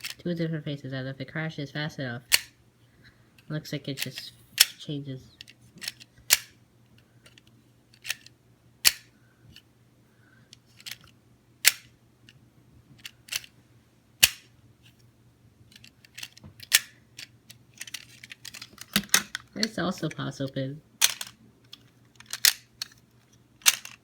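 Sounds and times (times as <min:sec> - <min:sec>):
plastic toy clicks and snaps: 0:02.3 - 0:02.6, 0:04.0 - 0:04.8, 0:05.4 - 0:06.6, 0:07.3 - 0:09.1, 0:10.5 - 0:11.9, 0:13.0 - 0:13.5, 0:14.2 - 0:14.5, 0:15.7 - 0:19.8, 0:21.0 - 0:23.0, 0:23.6 - 0:24.0.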